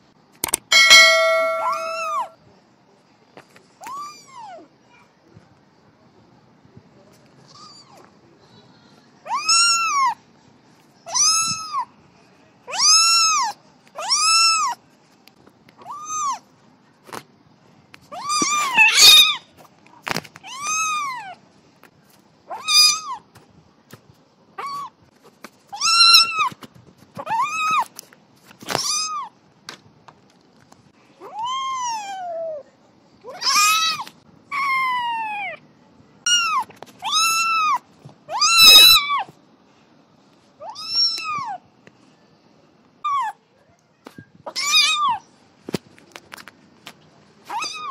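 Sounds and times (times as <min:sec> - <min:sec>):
kitten meowing: 0:36.3 - 0:39.2, 0:40.6 - 0:41.6, 0:44.5 - 0:45.2, 0:47.5 - 0:47.9.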